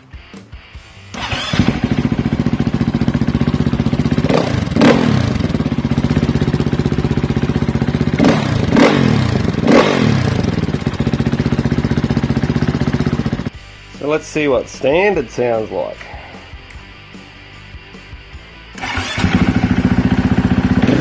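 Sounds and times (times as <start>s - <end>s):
engine throttle blips: 1.1s - 13.5s, 18.8s - 21.0s
motorcycle engine idling: 1.2s - 13.6s, 18.8s - 21.0s.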